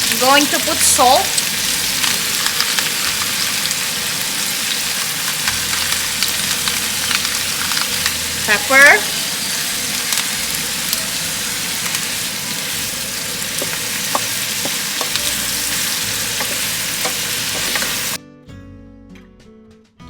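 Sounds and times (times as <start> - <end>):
food sizzling in a pan: 0.0 - 18.2
acoustic guitar music: 5.4 - 19.4.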